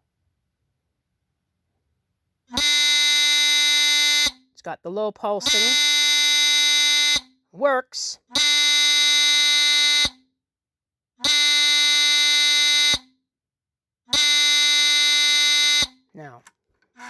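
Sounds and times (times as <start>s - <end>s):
smoke alarm buzzer horn: 2.5s - 4.5s, 5.4s - 7.4s, 8.3s - 10.3s, 11.2s - 13.2s, 14.1s - 16.1s.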